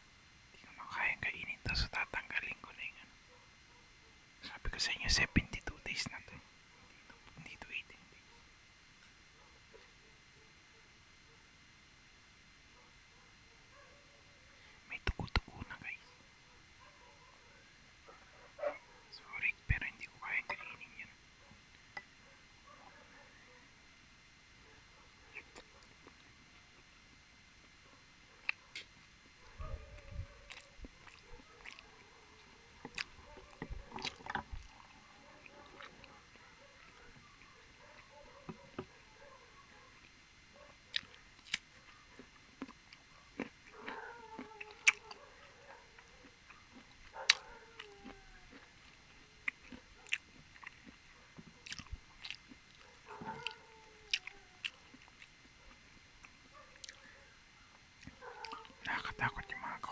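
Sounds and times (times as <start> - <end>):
mouth chewing and smacking: 25.3 - 26.3, 29.8 - 37.2, 40.9 - 57.2, 58.0 - 59.9.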